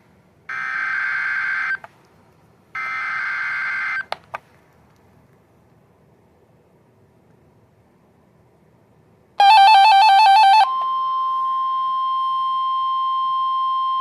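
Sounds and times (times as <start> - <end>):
steady alarm tone: 9.4 - 14.0.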